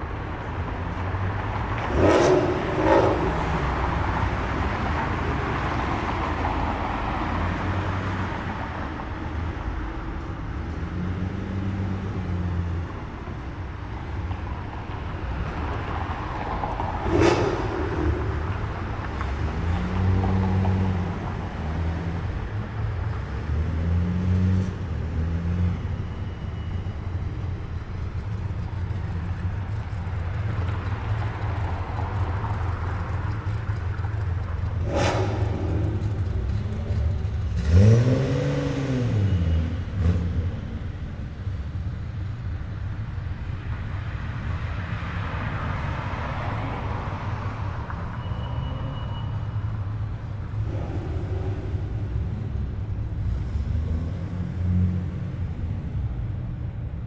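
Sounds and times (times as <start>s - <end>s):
cars rolling slowly past: 0.0s - 57.0s
engine revving: 1.8s - 5.7s, 17.0s - 21.1s, 34.7s - 40.5s.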